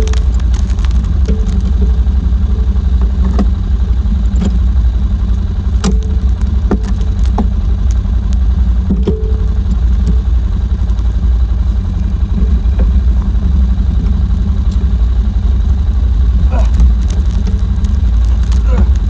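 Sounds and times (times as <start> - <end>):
light clicks and clatters: 0.0 - 3.6, 5.8 - 13.3, 16.5 - 19.0
atv engine running: 0.0 - 19.0.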